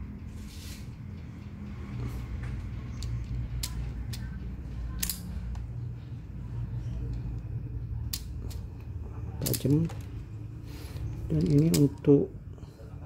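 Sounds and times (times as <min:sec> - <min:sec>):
steady low hum: 0:00.0 - 0:13.0
wire stripper clicking: 0:03.0 - 0:05.6, 0:11.3 - 0:12.1.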